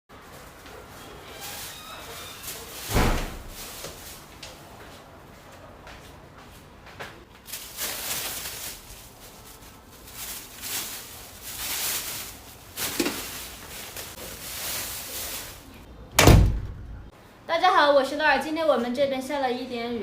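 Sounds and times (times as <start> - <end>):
rustling and handling noises: 0.1 - 15.9.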